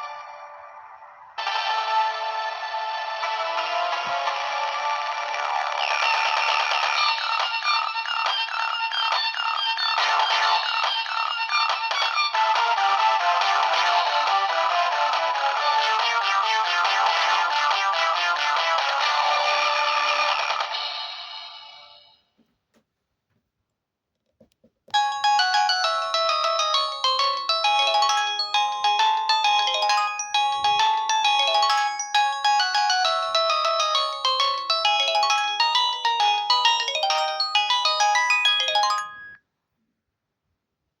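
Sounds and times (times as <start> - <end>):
polyphonic ringtone melody: 9.5 - 10.9, 25.0 - 39.4.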